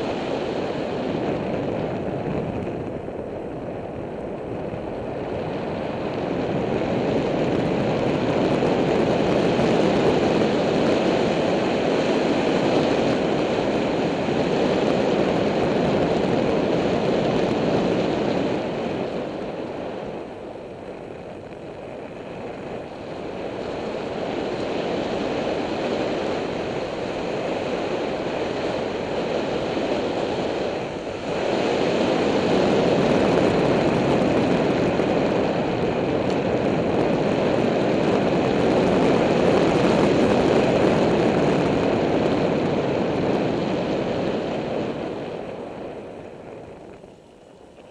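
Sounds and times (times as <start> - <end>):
wind rushing over microphone: 0.0 - 47.9.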